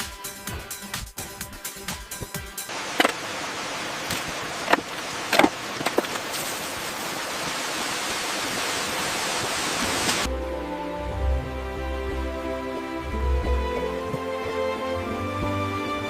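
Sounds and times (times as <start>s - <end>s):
steady hissing: 2.7s - 10.3s.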